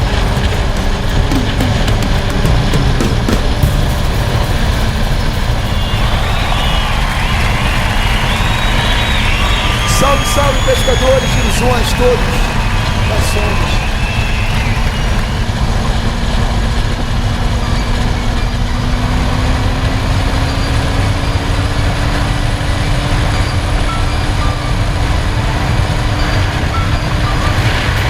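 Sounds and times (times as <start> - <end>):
motorcycle engine running: 0.0 - 6.5
heavy rushing noise: 0.0 - 17.6.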